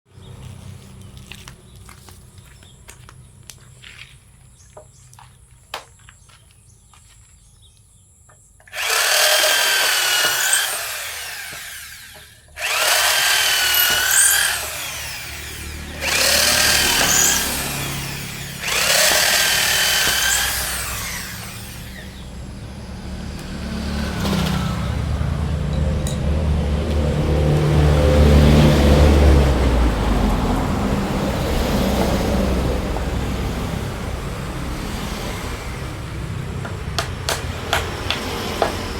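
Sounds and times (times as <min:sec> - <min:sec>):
power drill motor whine: 0:08.7 - 0:22.6.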